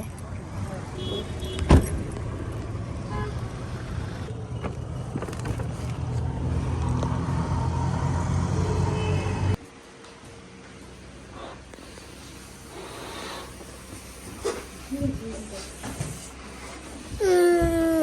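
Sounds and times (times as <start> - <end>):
vehicle engine rumble: 0.0 - 9.8.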